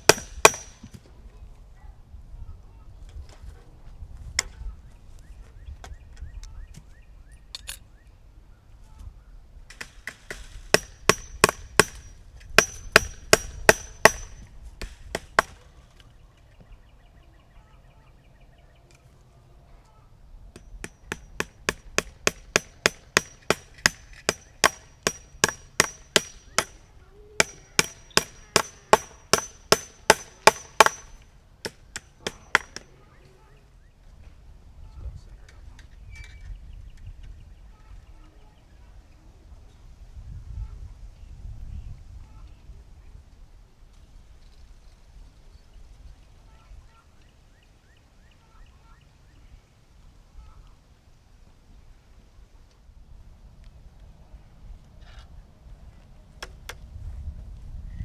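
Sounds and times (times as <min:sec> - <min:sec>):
hammer blows with metallic ring: 0:00.0 - 0:01.0, 0:10.7 - 0:15.6, 0:20.6 - 0:33.0.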